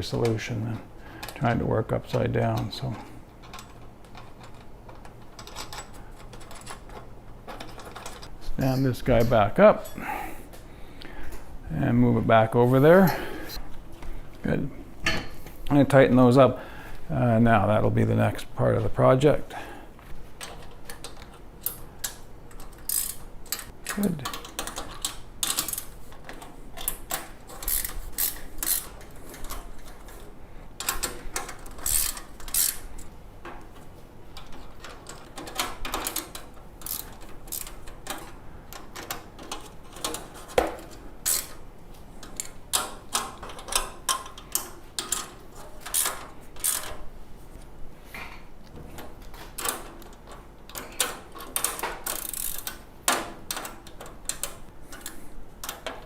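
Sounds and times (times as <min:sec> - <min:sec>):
wrench clicking on bolts: 0:20.4 - 0:25.9, 0:26.8 - 0:29.6, 0:30.8 - 0:32.9, 0:34.4 - 0:40.2, 0:41.2 - 0:41.6, 0:42.2 - 0:47.0, 0:49.6 - 0:52.8.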